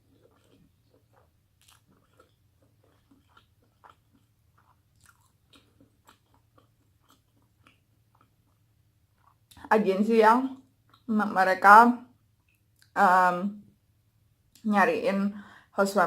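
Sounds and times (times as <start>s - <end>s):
faint chewing: 0.0s - 9.7s, 10.5s - 11.1s, 12.1s - 13.0s.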